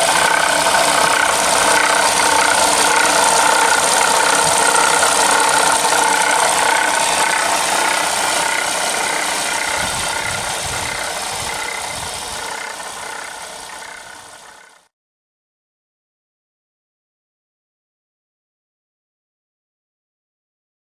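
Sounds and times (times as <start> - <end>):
car engine whining: 0.0 - 14.9.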